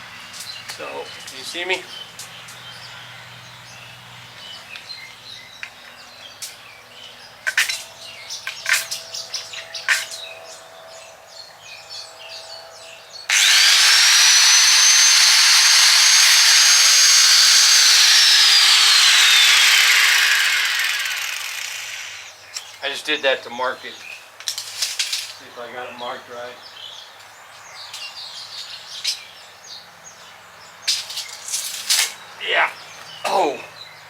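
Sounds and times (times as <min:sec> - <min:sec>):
angle grinder cutting steel: 0:13.3 - 0:22.3.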